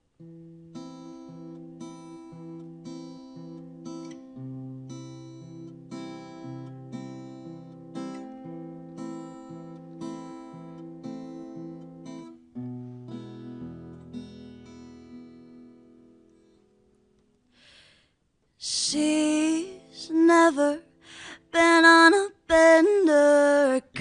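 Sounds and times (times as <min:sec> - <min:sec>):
acoustic guitar strumming chords: 0:00.2 - 0:17.2.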